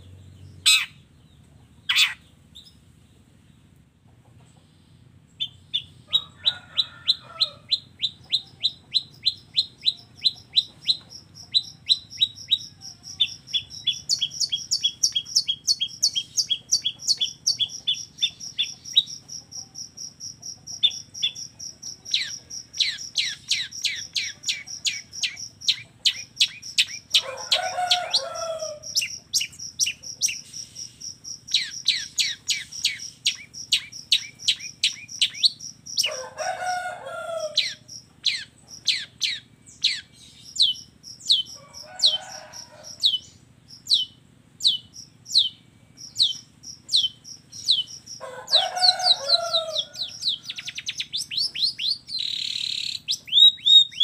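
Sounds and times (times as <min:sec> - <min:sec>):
harsh rasping bird calls: 0:00.0 - 0:02.8, 0:04.6 - 0:54.0
high pulsing bird trill: 0:05.3 - 0:54.0
bird singing whistled notes: 0:22.2 - 0:27.2, 0:28.9 - 0:36.1, 0:37.6 - 0:41.6, 0:43.0 - 0:48.2, 0:49.9 - 0:54.0.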